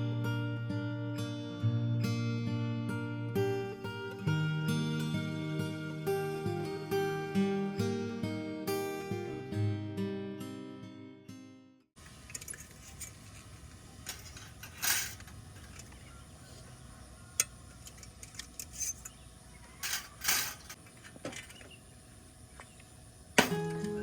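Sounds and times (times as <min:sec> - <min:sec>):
low steady hiss: 0:12.0 - 0:19.2.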